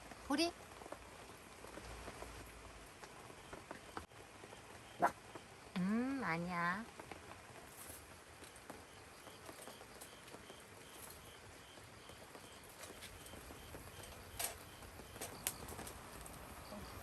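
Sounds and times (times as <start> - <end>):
light rain pattering: 0.0 - 17.0
insect chirping faintly: 7.8 - 17.0.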